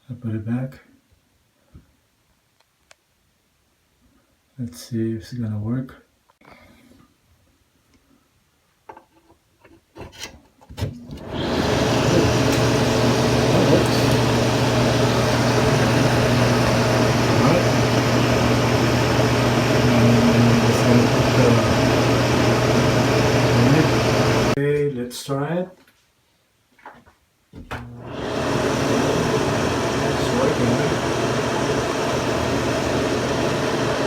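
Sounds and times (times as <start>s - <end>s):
exhaust fan rushing air: 11.2s - 24.6s, 28.0s - 34.0s.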